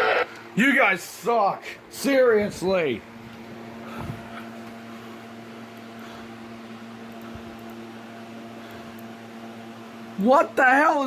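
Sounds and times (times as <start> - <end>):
steady electrical hum: 0.0 - 11.0.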